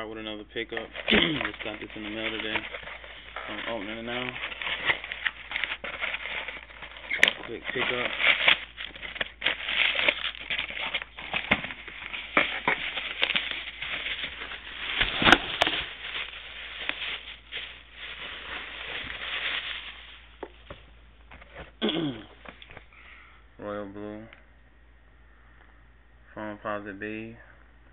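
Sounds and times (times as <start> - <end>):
packaging crinkling: 0.4 - 21.6.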